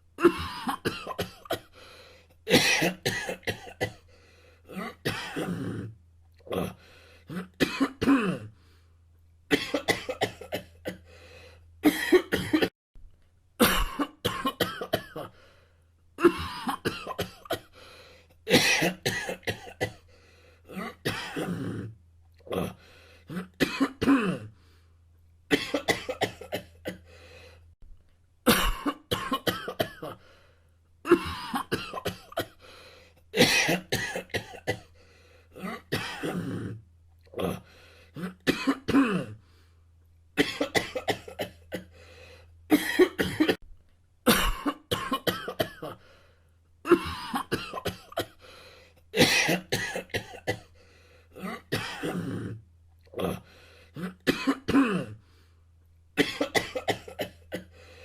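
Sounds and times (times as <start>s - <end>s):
person coughing: 0.2s - 1.8s, 2.5s - 4.1s, 4.7s - 8.5s, 9.5s - 11.0s, 11.8s - 12.7s, 13.6s - 15.3s, 16.2s - 17.8s, 18.5s - 20.1s, 20.7s - 21.9s, 22.5s - 24.5s, 25.5s - 27.1s, 28.5s - 30.2s, 31.1s - 32.6s, 33.4s - 34.9s, 35.6s - 36.8s, 37.4s - 39.4s, 40.4s - 41.9s, 42.7s - 43.6s, 44.3s - 46.0s, 46.9s - 48.4s, 49.2s - 50.7s, 51.4s - 52.6s, 53.2s - 55.2s, 56.2s - 57.8s.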